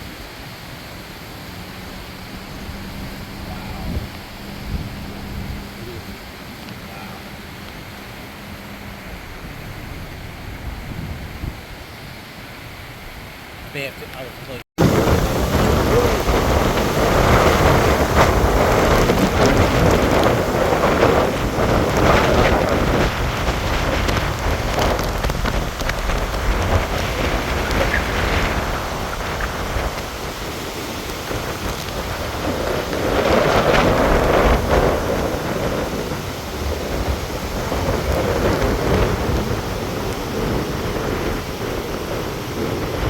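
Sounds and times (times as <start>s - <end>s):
heavy rain pouring: 0.0s - 43.0s
strong wind rumble: 0.0s - 43.0s
surf: 0.0s - 43.0s
low rumble: 14.8s - 30.4s.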